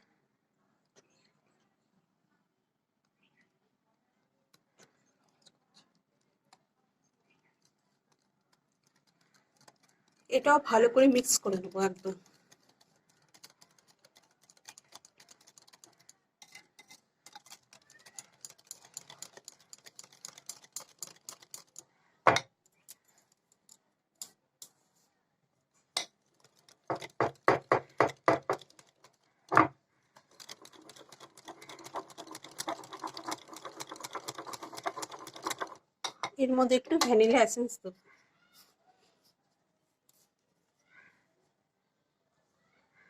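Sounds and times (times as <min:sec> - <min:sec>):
utensil scraping a mixing bowl: 0:11.2 - 0:21.8, 0:30.2 - 0:36.2.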